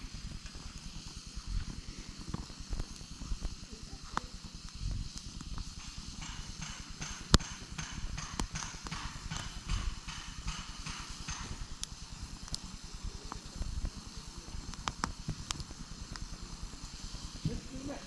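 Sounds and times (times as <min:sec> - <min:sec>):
campfire crackling: 0:00.0 - 0:18.0
wood popping and snapping: 0:05.0 - 0:13.9.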